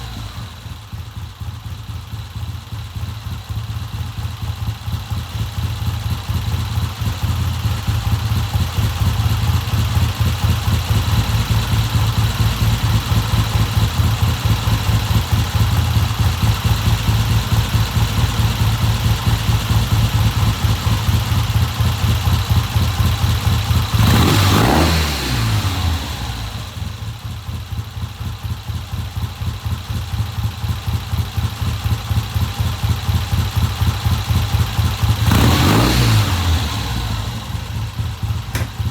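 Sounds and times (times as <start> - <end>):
motorcycle engine idling and revving: 0.0 - 38.9.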